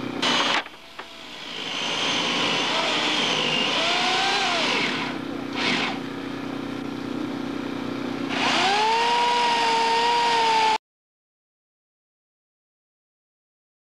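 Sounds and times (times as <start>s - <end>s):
engine idling and revving: 0.0s - 10.8s.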